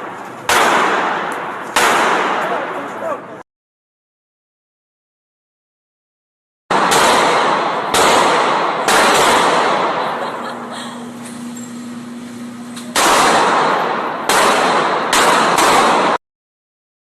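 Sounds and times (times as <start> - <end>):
gunshots with reverberation: 0.0 - 2.9, 6.7 - 10.3, 12.9 - 16.2.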